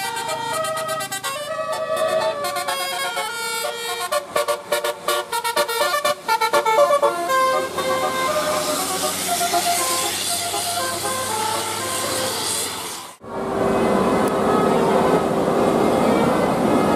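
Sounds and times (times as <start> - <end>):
multi-trumpet bus horns: 0.0 - 16.9
hiss: 8.4 - 13.2.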